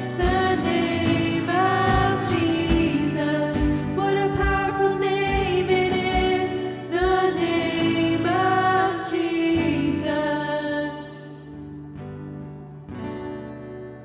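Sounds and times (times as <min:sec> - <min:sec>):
worship band singing: 0:00.0 - 0:11.4
kick drum beat: 0:00.2 - 0:01.3, 0:01.9 - 0:08.0.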